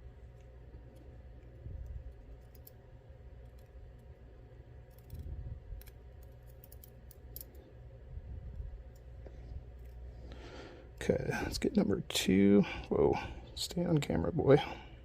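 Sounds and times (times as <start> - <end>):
tools clicking against lock: 5.8 - 7.6.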